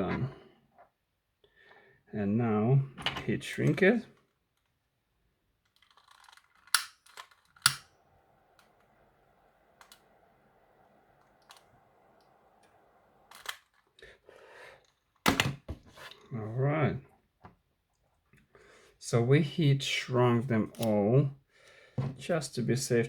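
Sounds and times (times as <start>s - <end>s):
faint steady hiss: 0.0s - 4.5s, 6.7s - 23.0s
sharp clicks: 5.7s - 14.0s.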